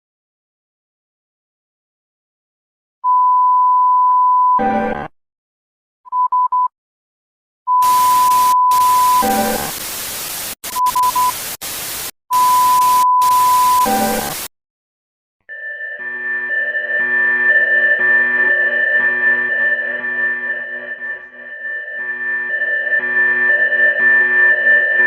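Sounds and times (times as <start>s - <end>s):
bursts of static: 7.8s - 14.5s
quick beeps: 12.3s - 14.2s
high test tone: 15.5s - 25.0s
synthesizer music: 15.5s - 25.0s.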